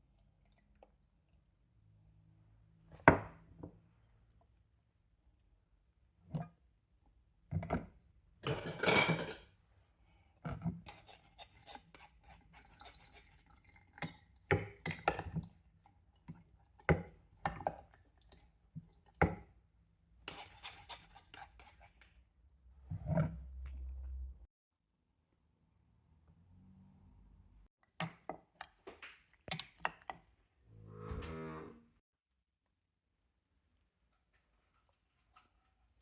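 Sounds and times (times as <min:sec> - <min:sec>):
dishes clinking and scraping: 0:08.4 - 0:09.6.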